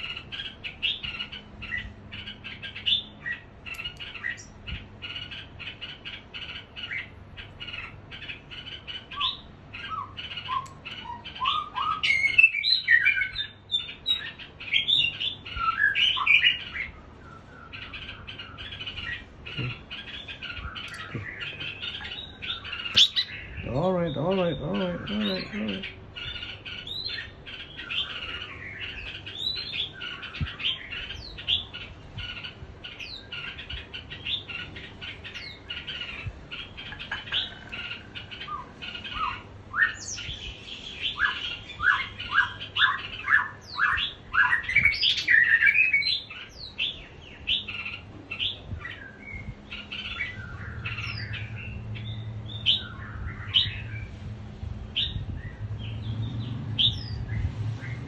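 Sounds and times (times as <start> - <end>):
caged songbirds chirping: 0.0 - 58.0
low steady hum: 46.2 - 58.0.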